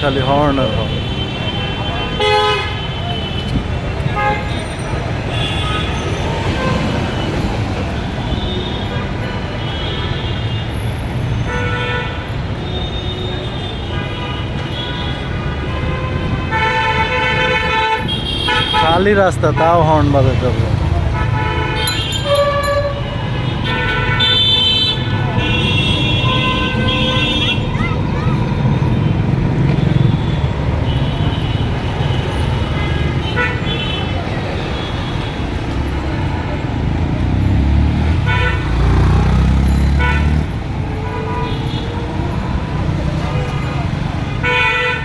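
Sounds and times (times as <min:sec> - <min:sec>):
road traffic rumble: 0:00.0 - 0:45.0
vehicle horns honking: 0:00.0 - 0:45.0
engine rumbling past: 0:35.8 - 0:40.9.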